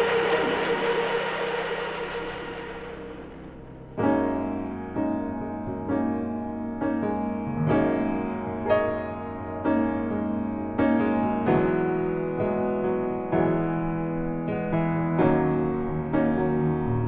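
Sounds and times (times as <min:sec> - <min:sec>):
cymbal-like swell: 0:00.0 - 0:04.2
piano chords: 0:00.0 - 0:17.0.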